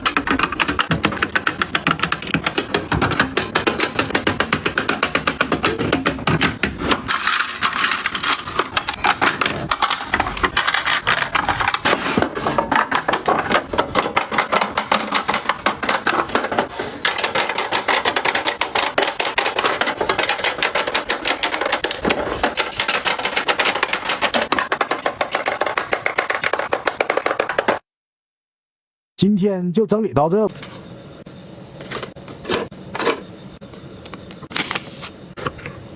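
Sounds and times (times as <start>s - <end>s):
plastic containers clicking: 0.0s - 27.8s.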